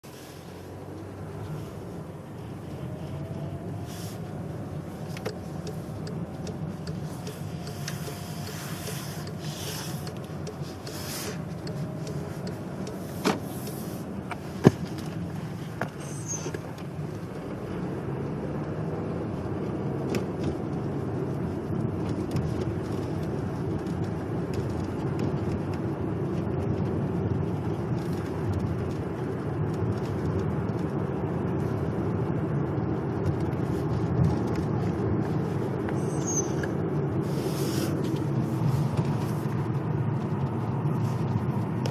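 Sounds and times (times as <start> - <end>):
brake pedal creaking and clicking: 0.8 - 17.8, 33.2 - 41.9.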